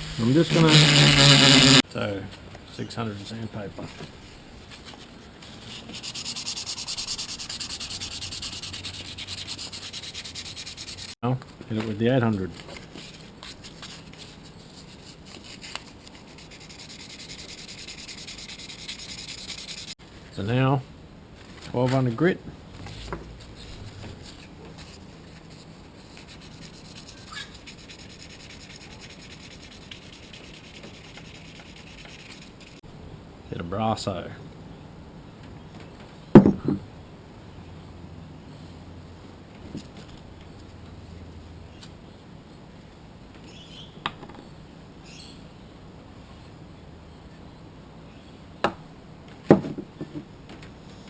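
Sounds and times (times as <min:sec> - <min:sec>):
sandpaper rubbing on coin: 0:00.0 - 0:01.8, 0:04.8 - 0:11.2, 0:13.0 - 0:20.0, 0:22.9 - 0:32.8.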